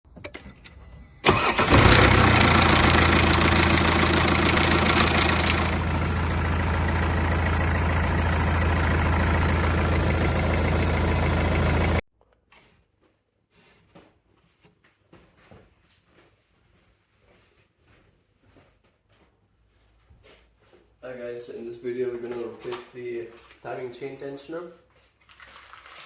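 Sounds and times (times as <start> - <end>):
diesel engine starting and running: 0.2 - 12.0.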